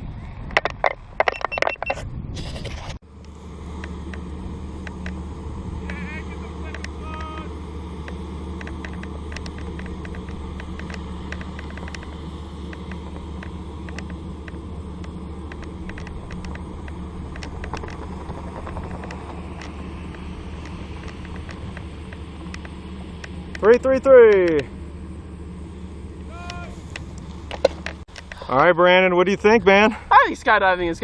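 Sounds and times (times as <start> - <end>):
low engine drone: 0.0 - 31.0
clicks and rattles: 8.0 - 23.6.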